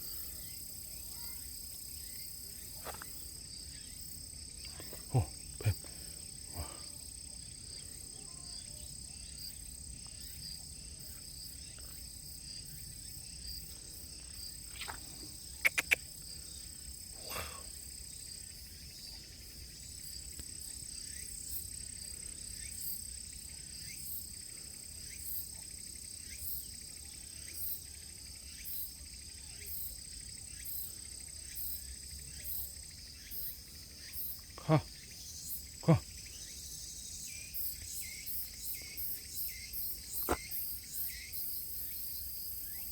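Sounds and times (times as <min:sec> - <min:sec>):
insects droning: 0:00.0 - 0:42.9
very high insect chirps: 0:00.0 - 0:42.9
sharp clicks: 0:15.7 - 0:16.0.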